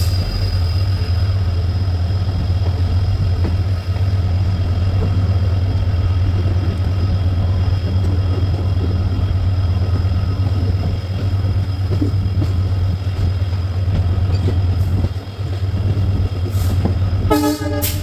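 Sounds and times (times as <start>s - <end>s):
diesel locomotive engine droning: 0.0s - 18.0s.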